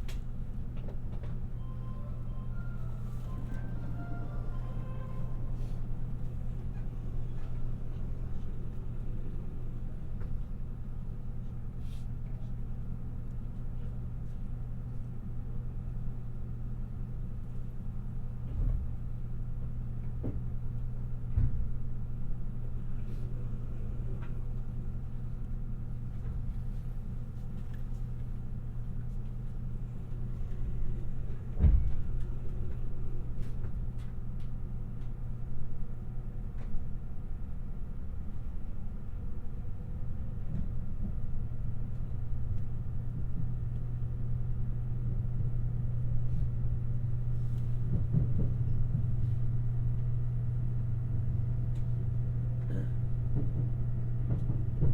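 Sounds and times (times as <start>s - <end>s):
electric train rumbling: 0.0s - 54.9s.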